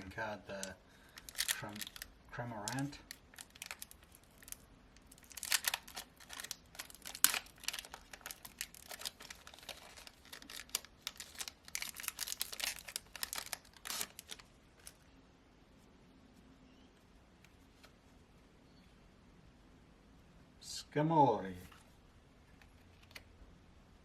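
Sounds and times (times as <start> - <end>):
cards rustling: 0.0 - 15.1
foil wrapper crinkling and tearing: 0.5 - 15.0.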